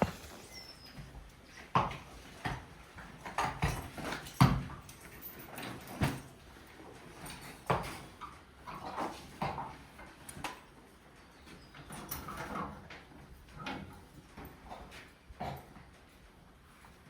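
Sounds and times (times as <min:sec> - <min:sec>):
hoof thuds and knocks: 0:00.0 - 0:00.6.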